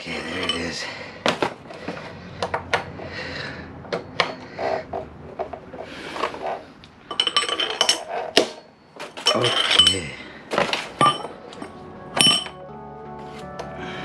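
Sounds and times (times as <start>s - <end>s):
hand tools clinking on metal: 0.0s - 0.8s, 7.1s - 12.6s.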